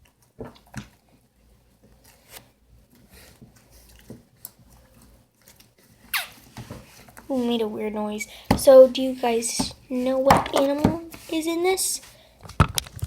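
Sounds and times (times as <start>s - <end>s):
slime rubbed by hand: 8.8s - 12.2s.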